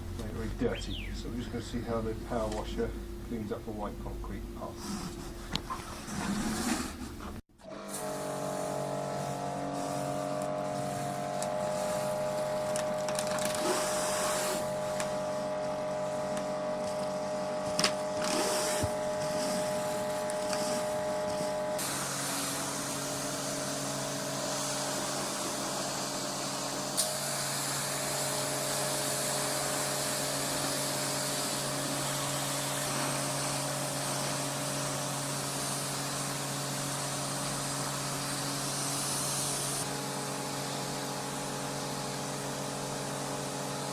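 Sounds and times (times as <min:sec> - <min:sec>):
pressure washer motor droning: 0:07.6 - 0:43.9
water jet hissing on concrete: 0:07.9 - 0:16.6, 0:18.2 - 0:43.9.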